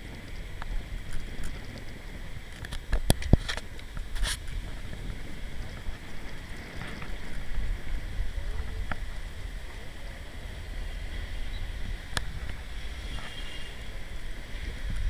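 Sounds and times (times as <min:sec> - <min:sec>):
wind rumble on microphone: 0:00.0 - 0:15.0
microphone handling noise: 0:02.4 - 0:07.8.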